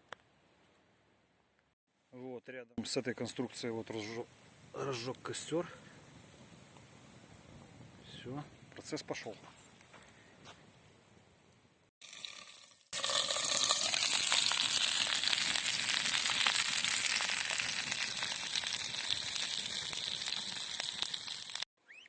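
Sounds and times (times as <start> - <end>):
wood fire crackling: 12.1 - 21.7.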